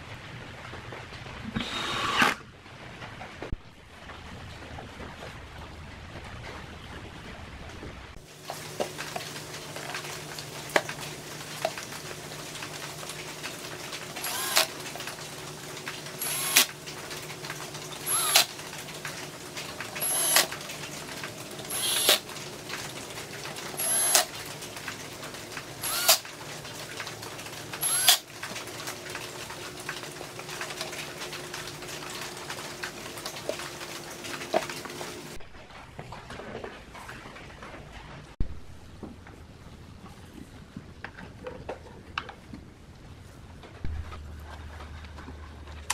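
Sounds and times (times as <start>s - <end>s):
power tool humming: 1.5s - 2.4s, 14.1s - 14.9s, 16.2s - 16.8s, 18.0s - 18.5s, 20.0s - 20.6s, 21.6s - 22.2s, 23.7s - 24.3s, 25.8s - 26.2s, 27.8s - 28.2s.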